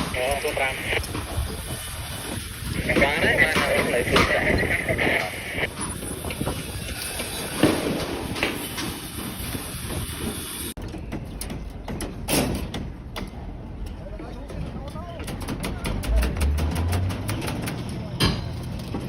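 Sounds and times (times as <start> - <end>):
steady rumble: 0.0 - 7.0.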